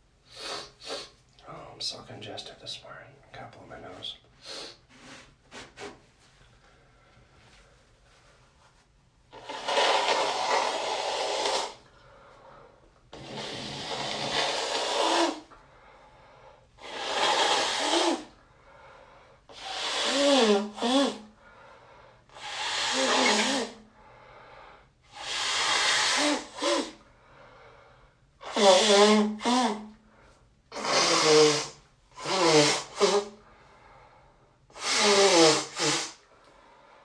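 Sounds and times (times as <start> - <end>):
person blowing nose: 0.3 - 1.2, 4.4 - 6.0, 9.3 - 11.9, 13.1 - 15.5, 16.8 - 18.4, 19.5 - 21.3, 22.3 - 23.8, 25.1 - 27.0, 28.4 - 30.0, 30.7 - 33.4, 34.7 - 36.3.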